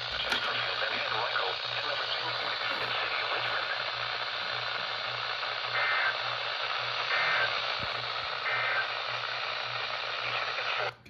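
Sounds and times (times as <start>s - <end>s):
low hum: 0.0s - 10.8s
radio static hiss: 0.0s - 11.0s.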